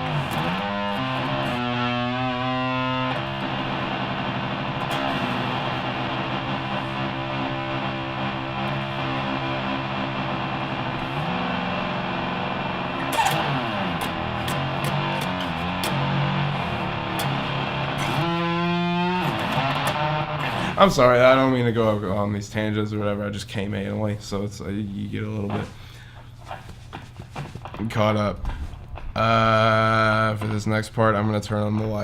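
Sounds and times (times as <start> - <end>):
distorted electric guitar notes: 0.0 - 21.6, 27.5 - 30.9.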